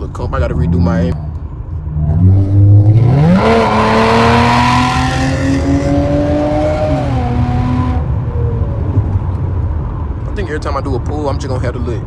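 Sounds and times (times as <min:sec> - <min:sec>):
car engine accelerating hard: 0:00.2 - 0:09.7.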